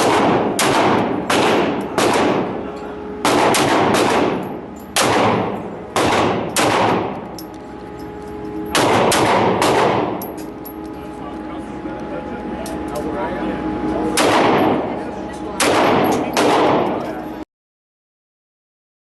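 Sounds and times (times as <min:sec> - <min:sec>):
echoing gunshots indoors: 0:00.0 - 0:10.8, 0:14.1 - 0:14.9, 0:15.6 - 0:17.1.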